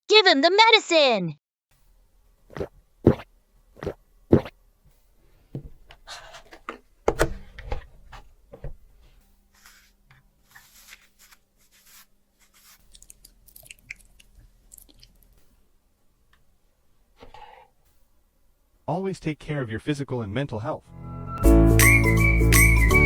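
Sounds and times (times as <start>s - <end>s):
rustling and scraping: 4.9s - 13.4s.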